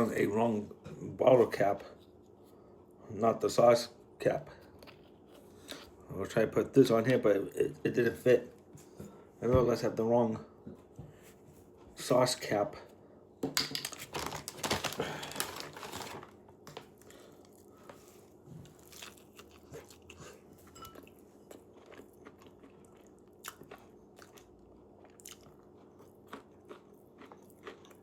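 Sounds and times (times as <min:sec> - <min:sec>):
chewing with crackles: 0:14.1 - 0:28.0
crunching bite of fried chicken: 0:18.7 - 0:20.5, 0:21.5 - 0:28.0.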